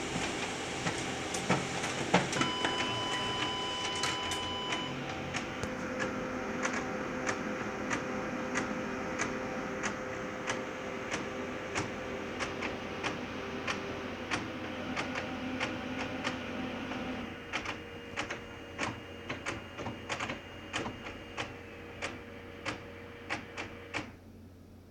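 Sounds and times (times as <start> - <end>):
printer mechanical whir: 0.0 - 24.2
printer clicks: 17.5 - 24.2.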